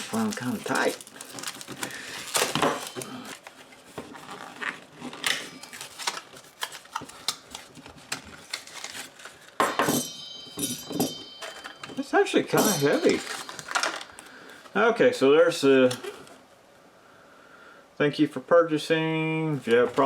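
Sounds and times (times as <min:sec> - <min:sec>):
small box being opened: 0:00.0 - 0:09.4.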